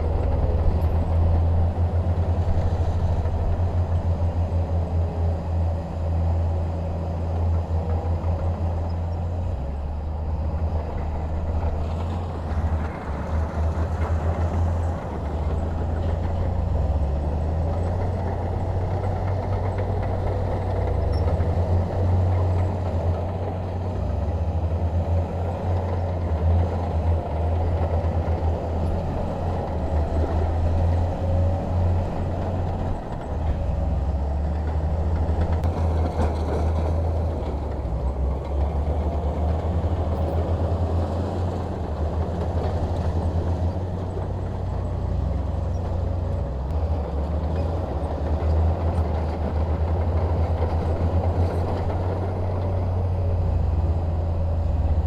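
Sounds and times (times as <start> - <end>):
bulldozer diesel engine: 0.0 - 55.0.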